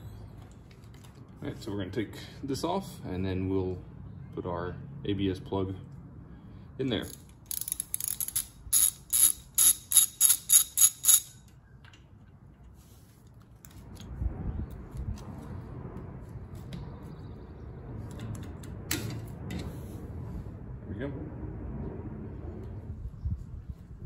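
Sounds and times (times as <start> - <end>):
handling and rustling: 0.0 - 1.8
hand ratchet clicking: 7.0 - 11.5.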